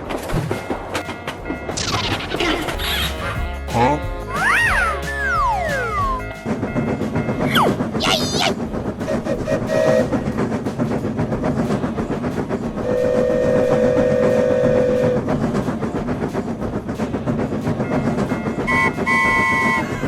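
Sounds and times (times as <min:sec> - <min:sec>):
train wheels clattering on rail: 0:00.0 - 0:20.0
short high train toots: 0:07.4 - 0:10.4, 0:12.8 - 0:15.4, 0:18.4 - 0:20.0
train horn note: 0:09.0 - 0:10.4, 0:12.8 - 0:15.3, 0:18.6 - 0:20.0.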